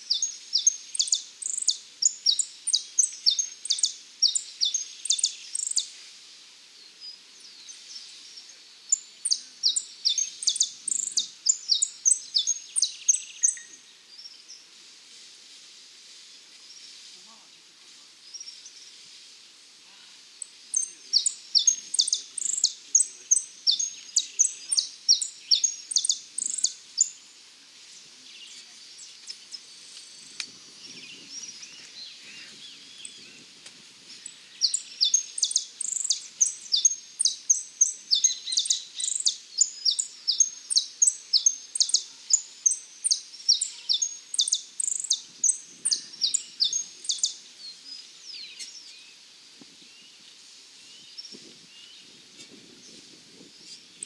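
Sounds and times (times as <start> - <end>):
finch singing rapid high chirps: 34.6 - 47.3.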